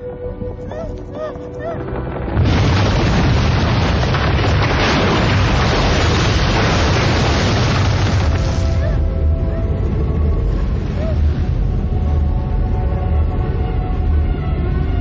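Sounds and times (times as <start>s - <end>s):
explosion boom and rumble: 1.8s - 12.7s.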